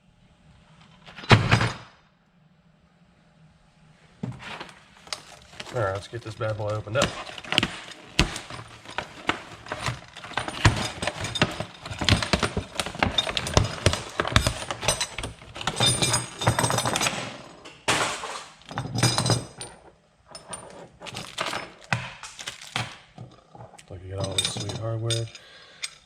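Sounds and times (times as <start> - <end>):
packaging rustling and tearing: 4.4 - 15.9, 21.0 - 22.8
small metal parts clinking: 5.0 - 26.0.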